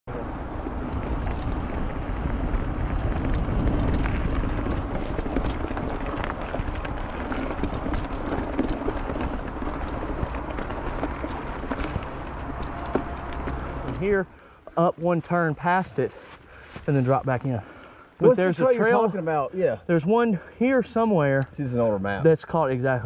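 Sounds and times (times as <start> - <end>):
wind buffeting microphone: 0.1 - 14.3.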